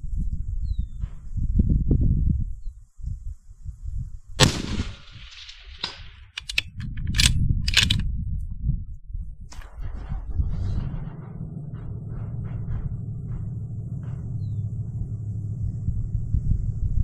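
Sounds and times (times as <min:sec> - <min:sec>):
rifle shot: 0:04.4 - 0:08.0
short sharp clicks: 0:04.9 - 0:08.0.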